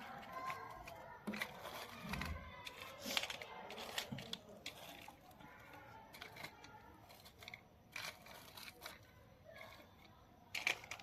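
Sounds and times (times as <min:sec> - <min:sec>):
crinkly burst: 0:00.0 - 0:11.0.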